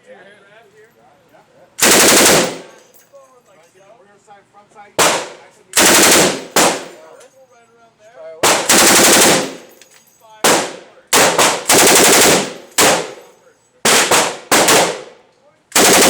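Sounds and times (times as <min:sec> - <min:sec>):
automatic gunfire bursts: 0:01.8 - 0:02.8, 0:05.0 - 0:07.0, 0:08.4 - 0:09.7, 0:10.4 - 0:13.2, 0:13.9 - 0:16.0.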